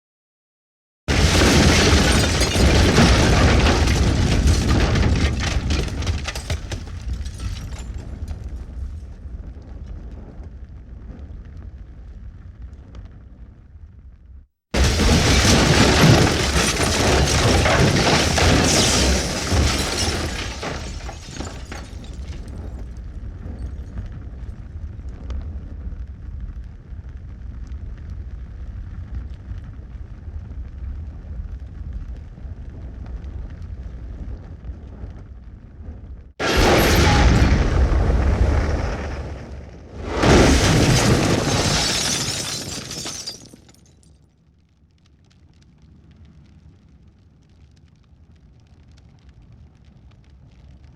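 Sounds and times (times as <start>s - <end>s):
explosions: 1.1s - 11.1s, 14.8s - 24.6s, 35.8s - 43.5s
crackling debris: 1.1s - 50.9s.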